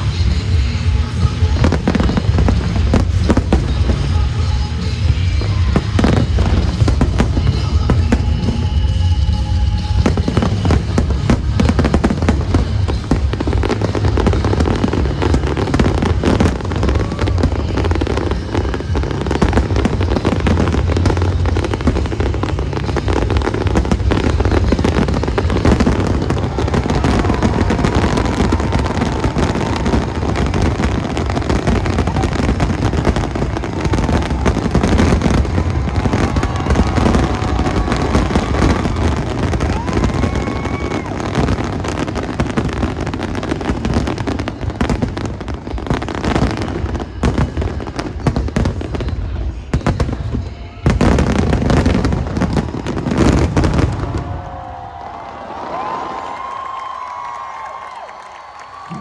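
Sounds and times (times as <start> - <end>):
fireworks whistles: 0.0 - 54.7
fireworks crackling and banging: 0.0 - 59.0.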